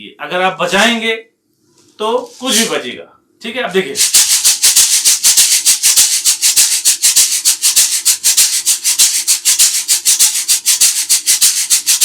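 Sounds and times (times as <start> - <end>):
shakers shaken in fast rhythm: 2.2 - 2.8, 3.9 - 12.0.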